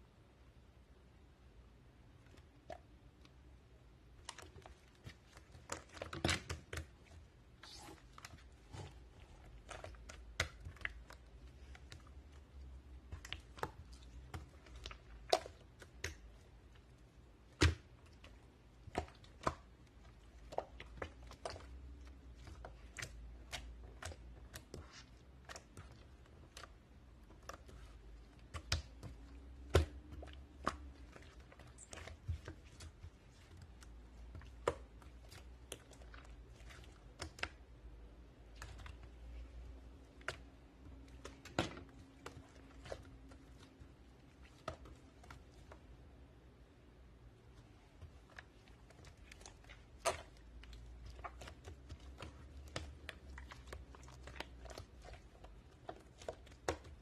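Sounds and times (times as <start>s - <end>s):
slime squeezed by hand: 7.5s - 11.0s.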